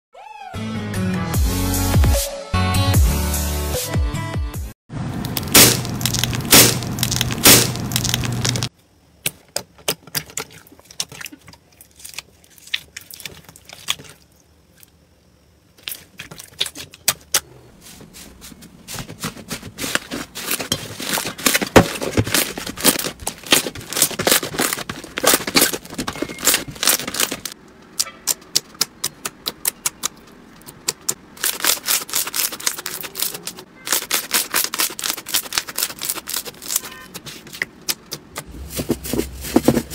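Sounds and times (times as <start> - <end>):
music: 0.5 - 4.8
crunchy slime crackling: 5.3 - 8.7, 15.8 - 17.4, 19.1 - 38.2.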